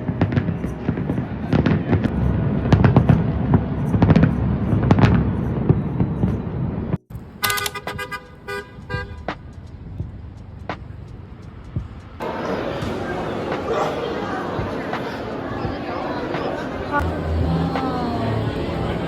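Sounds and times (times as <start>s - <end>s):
fireworks cracking and booming: 0.0s - 6.9s
car horns honking: 7.3s - 9.4s
heavy rumble: 17.0s - 19.0s.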